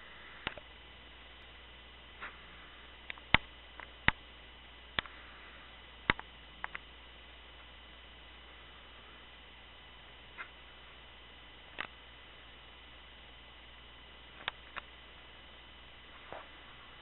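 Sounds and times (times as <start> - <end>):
steady hiss: 0.0 - 17.0.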